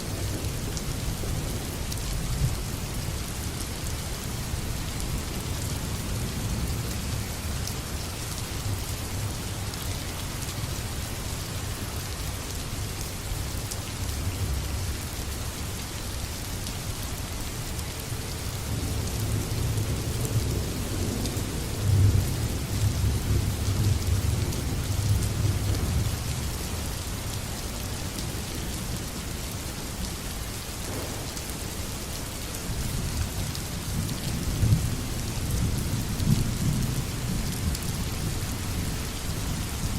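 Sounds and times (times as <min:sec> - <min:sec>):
heavy rain falling: 0:00.0 - 0:39.9
thunder rumbling: 0:30.8 - 0:37.3.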